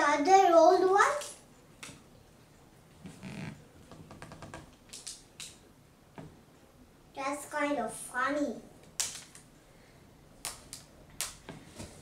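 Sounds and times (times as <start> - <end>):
small clicks and taps of hands: 10.4 - 11.6.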